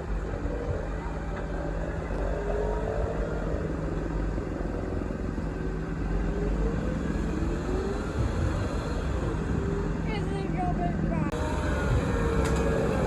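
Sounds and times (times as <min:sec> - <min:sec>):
faint whine: 0:00.0 - 0:13.0
tractor diesel engine running: 0:03.1 - 0:13.0.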